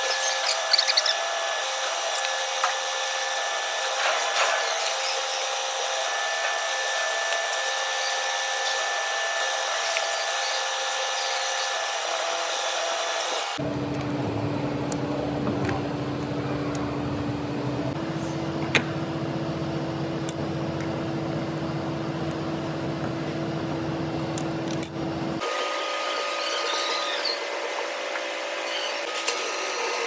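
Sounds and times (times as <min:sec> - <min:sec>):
metal lathe humming: 0:00.0 - 0:13.7.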